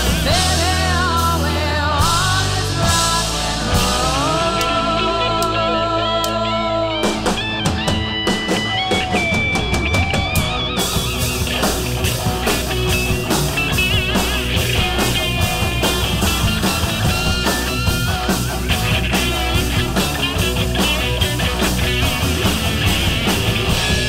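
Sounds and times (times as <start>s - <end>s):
drums: 0.0s - 24.0s
electric guitar lead: 0.0s - 24.0s
rhythm guitar: 0.0s - 24.0s.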